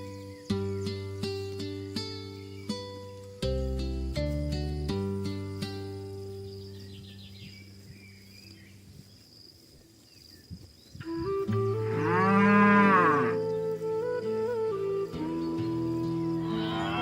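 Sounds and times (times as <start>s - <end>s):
background music: 11.1s - 17.0s
cow mooing: 11.8s - 13.4s, 16.4s - 17.0s.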